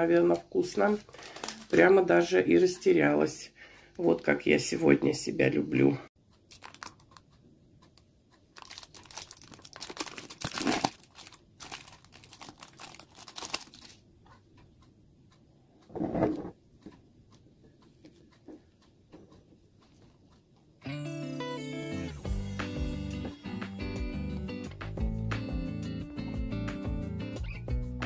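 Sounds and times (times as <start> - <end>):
plastic packaging crinkling: 0.6 - 2.0, 6.5 - 7.2, 8.5 - 14.0.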